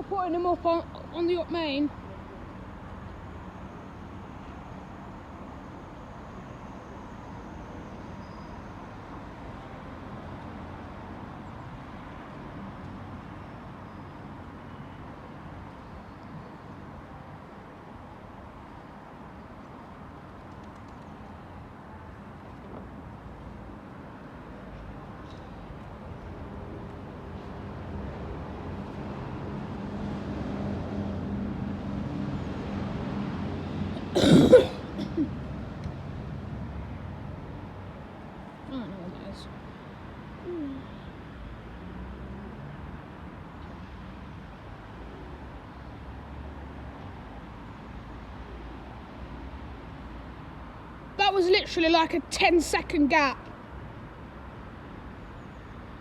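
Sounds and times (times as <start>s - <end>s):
vehicle engines rumbling: 31.1s - 43.9s
person coughing: 34.2s - 35.3s.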